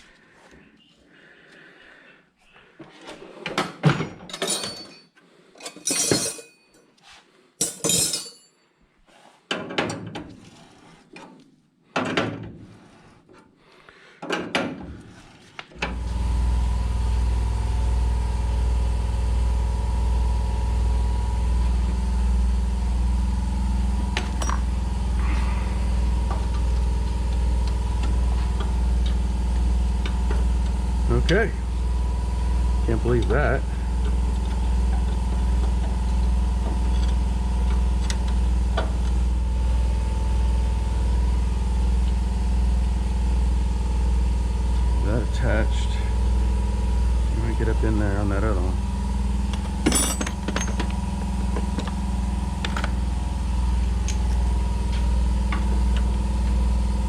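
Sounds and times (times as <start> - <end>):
metal tools clanking on sheet metal: 3.5 - 6.8, 7.6 - 8.6
motor humming: 15.8 - 57.0.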